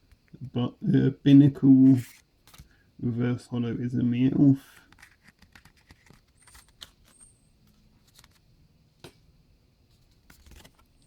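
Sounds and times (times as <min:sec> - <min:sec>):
trading cards rustling and clicking: 0:04.7 - 0:08.4, 0:10.1 - 0:10.9.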